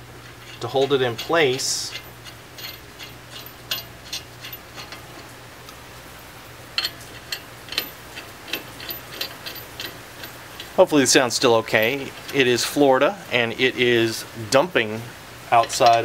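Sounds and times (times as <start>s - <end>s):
steady low hum: 0.0s - 16.0s
lug nuts clicking onto studs: 6.8s - 10.8s, 15.5s - 16.0s.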